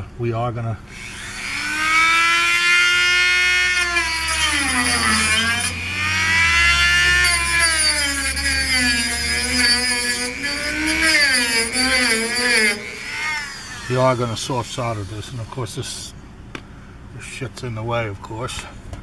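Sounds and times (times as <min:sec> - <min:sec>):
rotary tool grinding metal: 0:01.0 - 0:15.7.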